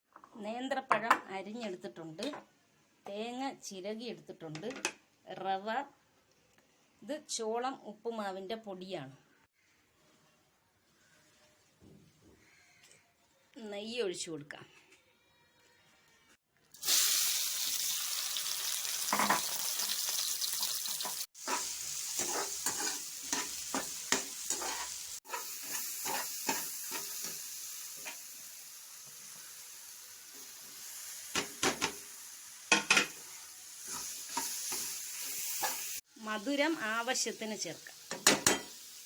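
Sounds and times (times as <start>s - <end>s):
food sizzling in a pan: 16.8s - 39.0s
spatula scraping a pan: 21.4s - 27.4s.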